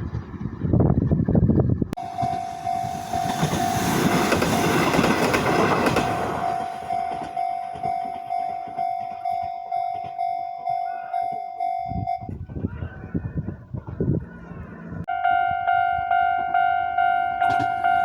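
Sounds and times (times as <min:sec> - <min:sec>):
level crossing warning bell ringing: 0:02.0 - 0:12.4, 0:15.1 - 0:18.0
train passing: 0:02.0 - 0:12.4, 0:14.2 - 0:18.0.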